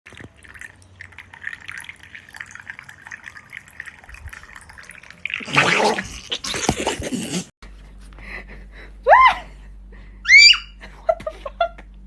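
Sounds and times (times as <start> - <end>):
liquid dripping and splashing: 0.1 - 6.5.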